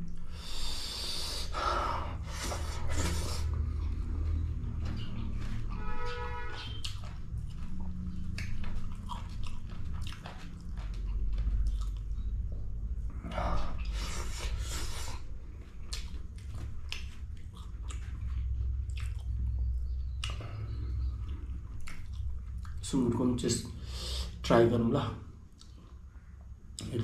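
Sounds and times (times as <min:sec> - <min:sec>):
steady low hum: 0:00.0 - 0:27.0
person chewing: 0:02.2 - 0:22.8, 0:25.5 - 0:26.0.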